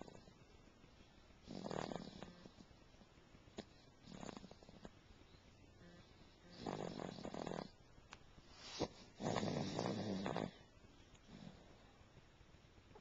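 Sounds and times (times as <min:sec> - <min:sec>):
snoring: 0:00.0 - 0:00.4, 0:01.4 - 0:02.6, 0:03.6 - 0:04.9, 0:05.8 - 0:07.8, 0:08.7 - 0:10.7, 0:11.3 - 0:11.7.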